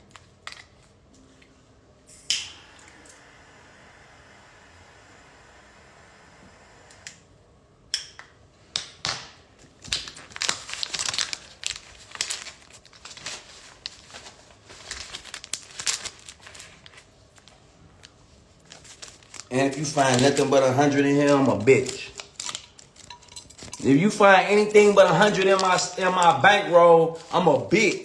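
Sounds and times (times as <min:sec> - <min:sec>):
paper bills crinkling and snapping: 0:09.6 - 0:28.0.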